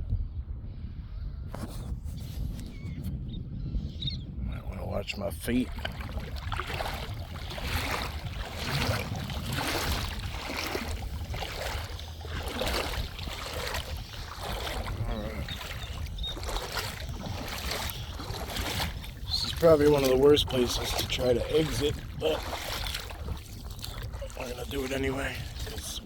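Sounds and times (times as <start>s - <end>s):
wind rumble on microphone: 0.0s - 26.0s
footsteps crunching on pebbles: 6.0s - 25.9s.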